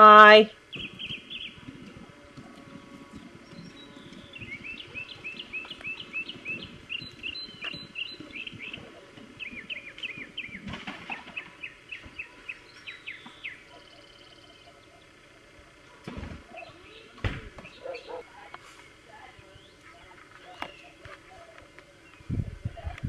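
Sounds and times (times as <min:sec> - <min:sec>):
bird chirping: 0:00.7 - 0:01.7, 0:02.6 - 0:15.3, 0:16.5 - 0:21.0.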